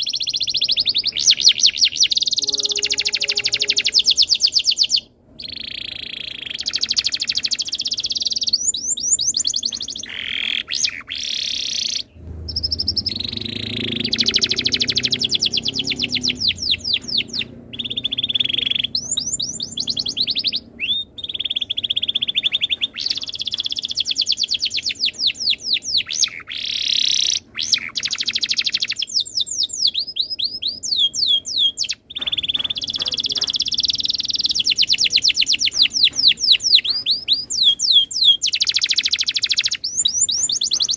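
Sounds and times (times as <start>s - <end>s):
canary singing trills: 0.0s - 40.9s
low rumble: 12.0s - 21.3s.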